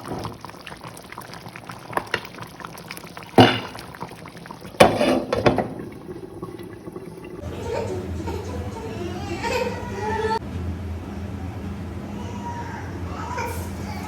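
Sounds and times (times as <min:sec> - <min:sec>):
curry bubbling and sizzling in pot: 0:00.0 - 0:07.5.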